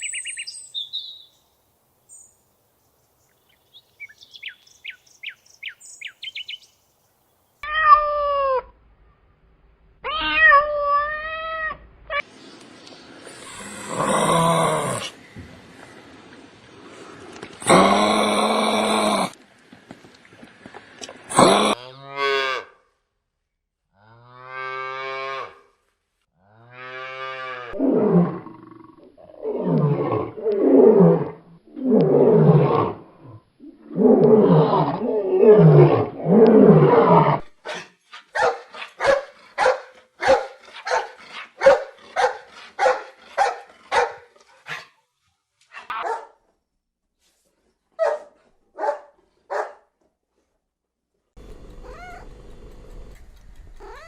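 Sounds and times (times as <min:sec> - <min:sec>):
animal calls: 0:51.7 - 0:52.4, 0:53.7 - 0:54.0.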